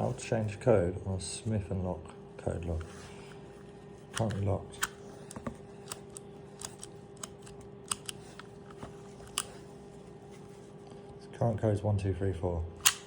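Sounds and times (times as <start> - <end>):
faint steady hum: 0.0 - 13.0
combination lock dials clicking: 4.2 - 9.6, 12.8 - 13.0.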